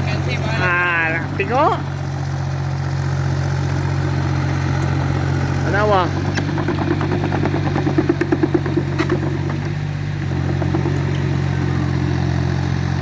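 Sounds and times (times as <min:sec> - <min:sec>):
backhoe engine running: 0:00.0 - 0:13.0
clattering knocks: 0:03.6 - 0:13.0.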